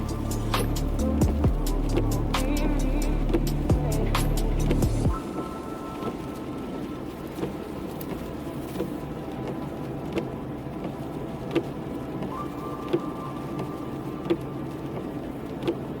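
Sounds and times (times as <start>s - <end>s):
car engine running: 0.0s - 5.2s.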